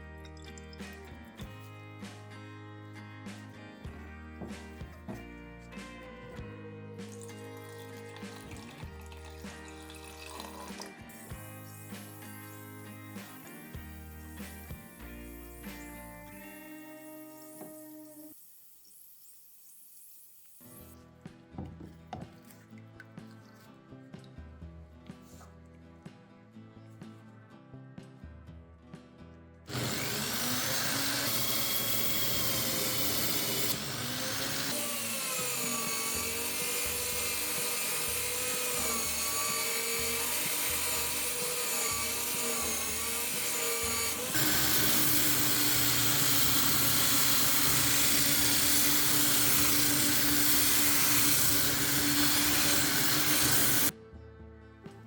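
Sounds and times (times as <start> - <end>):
power tool motor whine: 29.7 - 53.9.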